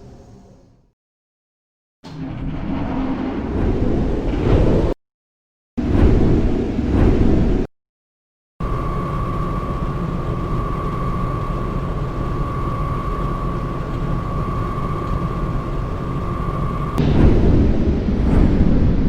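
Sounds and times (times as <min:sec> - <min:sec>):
industrial fan whirring: 0:08.6 - 0:19.0
deep rushing sound: 0:17.0 - 0:19.0.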